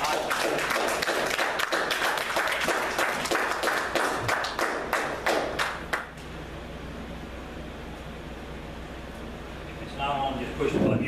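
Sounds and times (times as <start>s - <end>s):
congregation applauding: 0.0s - 6.1s
low room hum: 0.0s - 11.0s.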